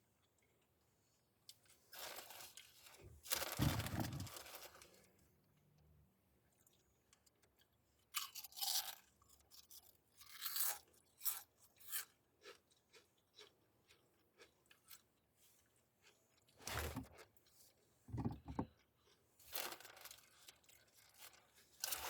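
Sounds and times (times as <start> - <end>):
crunchy food chewing: 2.0 - 5.0, 6.6 - 17.6.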